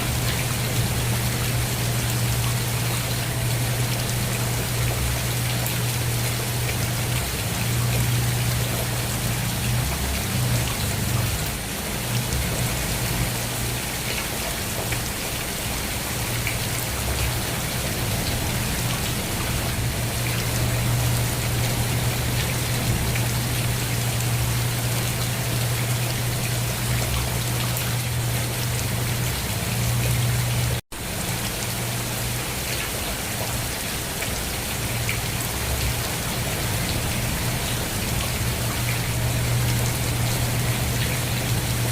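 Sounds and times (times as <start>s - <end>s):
steady rain falling: 0.0s - 41.9s.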